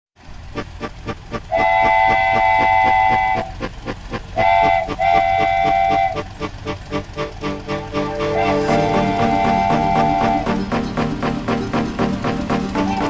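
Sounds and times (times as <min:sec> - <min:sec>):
steam locomotive chuffing: 0:00.2 - 0:13.0
train whistle chord: 0:01.4 - 0:03.7, 0:04.3 - 0:13.0.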